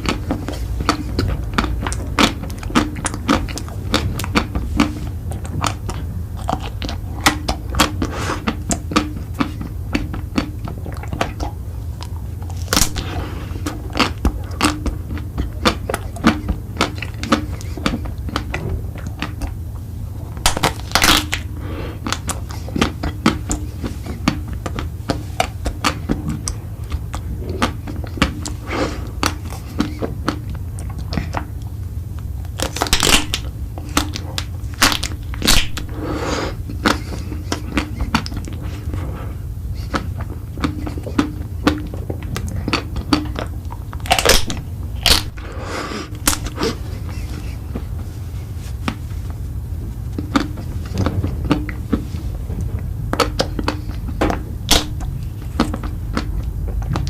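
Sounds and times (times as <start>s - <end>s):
crunching and chewing food: 0.0s - 57.0s
low hum: 0.0s - 57.0s.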